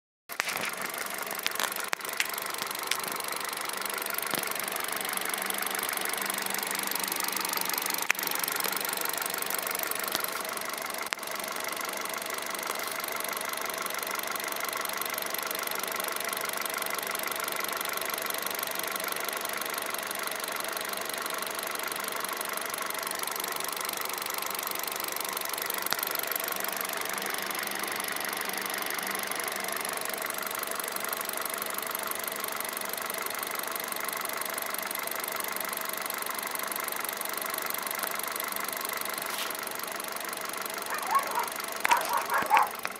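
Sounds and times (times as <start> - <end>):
car engine running: 0.3 - 42.9
fast even engine ticking: 0.3 - 42.9
sharp clicks: 40.9 - 42.9.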